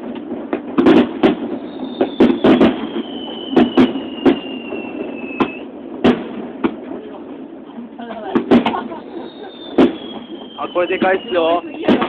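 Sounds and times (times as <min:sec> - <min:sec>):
fireworks bangs: 0:00.0 - 0:12.0
falling firework whistle: 0:00.7 - 0:06.4, 0:08.3 - 0:12.0.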